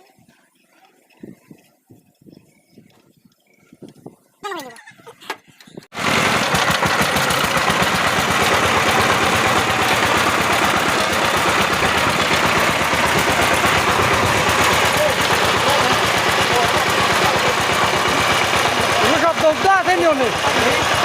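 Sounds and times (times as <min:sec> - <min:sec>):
tiller engine running: 0:05.9 - 0:21.0.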